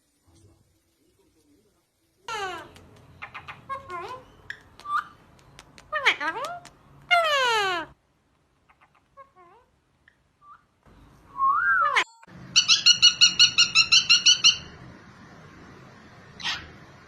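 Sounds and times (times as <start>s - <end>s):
parrot trill: 2.3s - 5.2s, 5.8s - 8.0s, 11.5s - 14.8s, 16.3s - 16.9s
parrot chirps: 2.3s - 8.0s, 11.7s - 14.8s, 16.4s - 16.8s.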